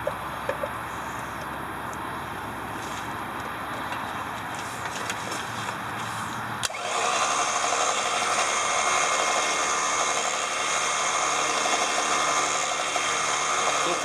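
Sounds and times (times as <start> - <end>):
winch electric motor running: 6.6 - 14.0.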